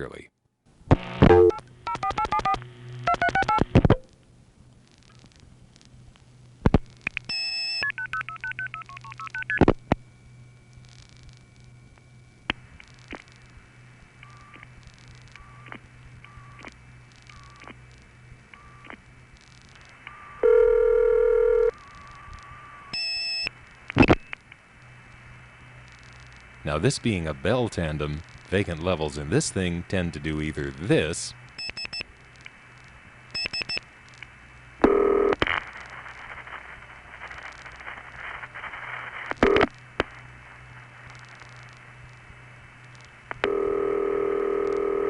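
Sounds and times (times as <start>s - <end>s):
line hum and hiss: 0.0s - 45.0s
telephone ringing tone: 20.1s - 23.5s, 34.8s - 35.4s, 43.4s - 45.0s.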